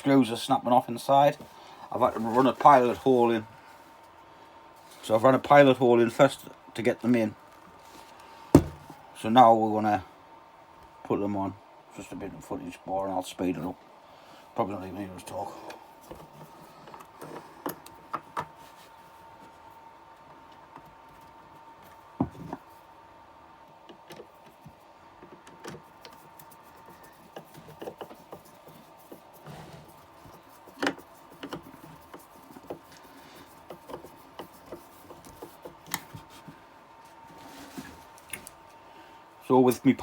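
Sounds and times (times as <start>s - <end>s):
faint steady hum: 0.0s - 40.0s
clicks and knocks of screwing: 30.7s - 36.2s.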